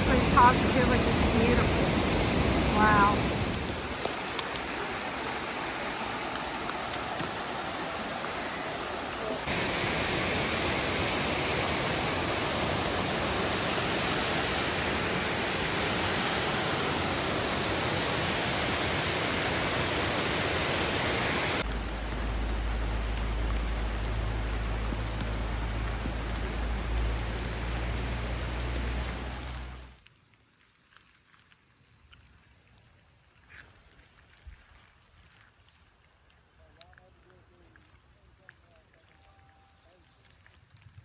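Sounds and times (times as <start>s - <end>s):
waterfall roaring: 0.0s - 29.9s.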